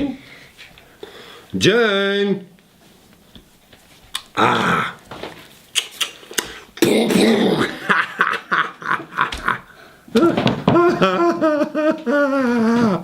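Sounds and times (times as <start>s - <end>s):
person making breathy vocal noises: 4.3s - 5.0s.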